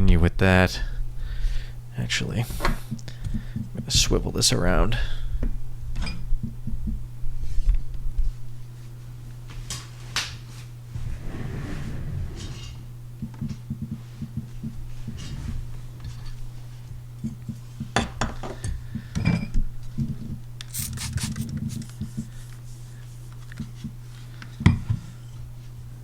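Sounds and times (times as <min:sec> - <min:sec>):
low steady hum: 0:00.0 - 0:26.0.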